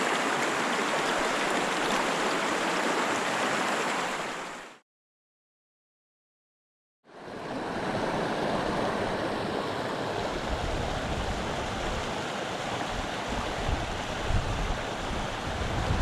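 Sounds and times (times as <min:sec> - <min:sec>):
stream rushing: 0:00.0 - 0:04.8, 0:07.1 - 0:16.0
wind buffeting microphone: 0:10.4 - 0:12.1, 0:12.8 - 0:16.0.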